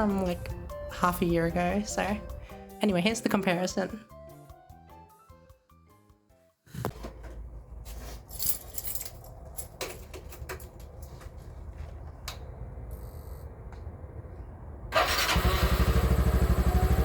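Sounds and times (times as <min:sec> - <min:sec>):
low rumble: 0:00.0 - 0:02.8, 0:07.3 - 0:15.0
keys jangling: 0:07.9 - 0:11.2.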